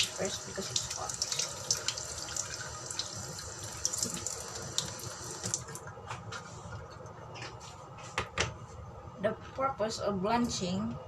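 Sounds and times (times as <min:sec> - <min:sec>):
tap water running into sink: 0:00.0 - 0:05.8.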